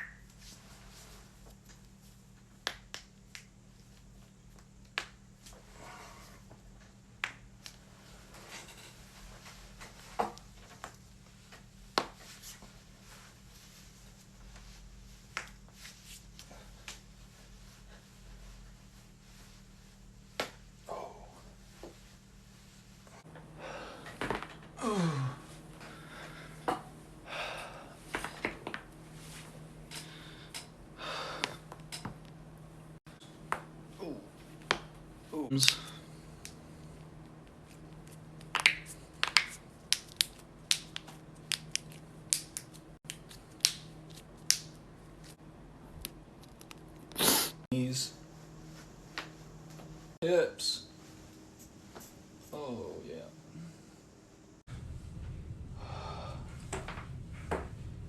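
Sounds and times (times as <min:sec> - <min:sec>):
steady low hum: 0:00.0 - 0:58.0
breathy exhales: 0:23.4 - 0:28.4, 0:30.0 - 0:31.7, 0:55.6 - 0:57.3.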